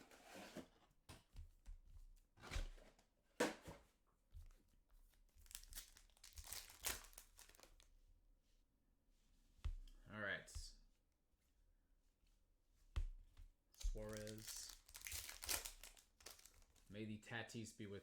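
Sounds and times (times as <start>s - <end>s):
wrapper tearing and crinkling: 5.4s - 7.8s, 13.9s - 16.9s.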